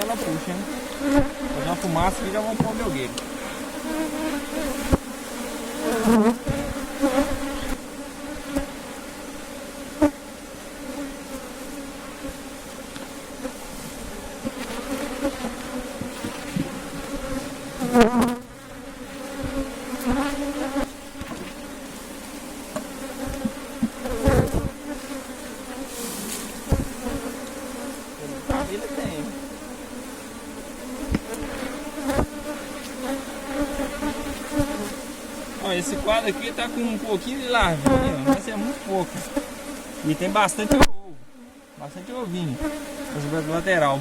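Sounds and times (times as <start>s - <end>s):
bees buzzing: 0.0s - 44.0s
knocks of hive parts: 2.0s - 3.4s, 4.7s - 5.1s, 22.7s - 24.8s, 26.3s - 27.6s, 31.0s - 32.9s, 37.6s - 38.5s, 40.7s - 41.0s.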